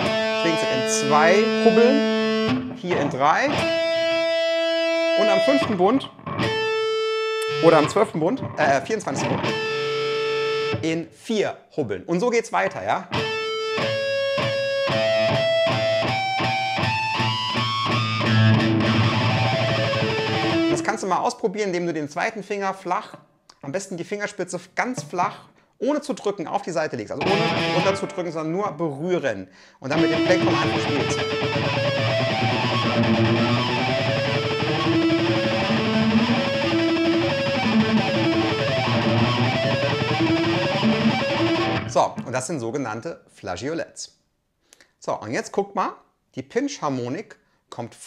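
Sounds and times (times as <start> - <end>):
low distorted guitar note: 0.0 - 4.3, 27.2 - 28.3, 30.0 - 42.3
distorted electric guitar harmonics: 0.0 - 10.8, 13.1 - 21.0, 27.2 - 28.5, 29.9 - 42.3.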